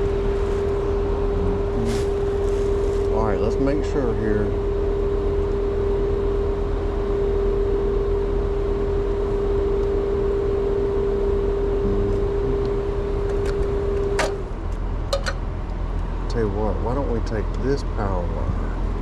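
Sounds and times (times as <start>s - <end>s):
air conditioner low hum: 0.0s - 19.0s
mid-pitched tone: 11.8s - 12.8s.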